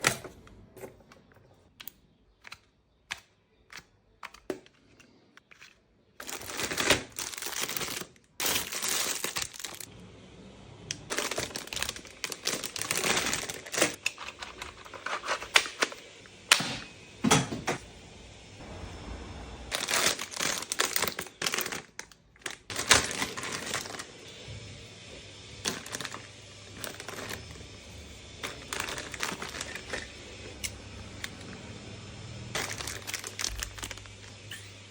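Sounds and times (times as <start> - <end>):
packaging clicks and taps: 1.8 - 5.8
wrapping crinkling: 5.4 - 9.9, 11.1 - 16.2, 19.7 - 24.4, 25.6 - 27.8, 28.4 - 31.6, 32.5 - 34.4.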